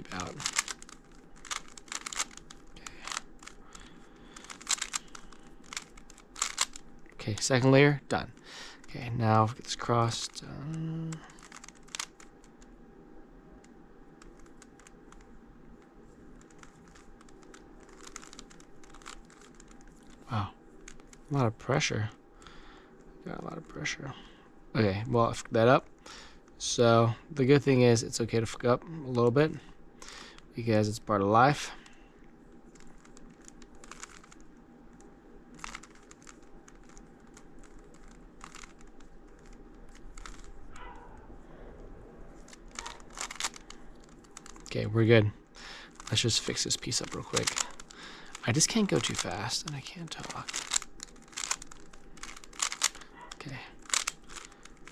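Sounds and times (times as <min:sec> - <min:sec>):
plastic puzzle cube clicking: 0:00.0 - 0:07.6, 0:10.1 - 0:12.7, 0:13.6 - 0:15.3, 0:16.4 - 0:21.3, 0:32.8 - 0:40.6, 0:42.4 - 0:44.8, 0:45.8 - 0:54.9.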